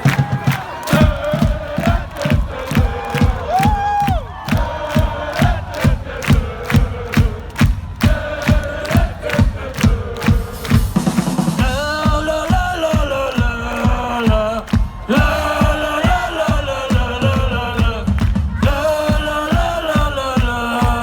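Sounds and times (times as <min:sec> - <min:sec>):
steady drum beat: 0:00.0 - 0:21.0
person singing: 0:11.6 - 0:21.0.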